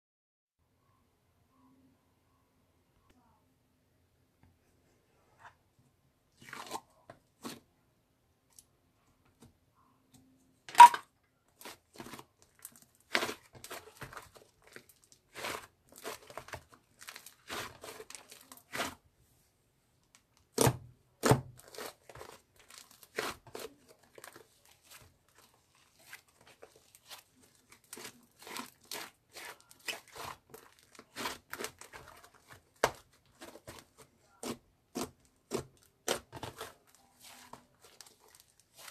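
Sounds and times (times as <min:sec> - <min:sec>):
crunching and tearing crackles: 0:21.6 - 0:38.9.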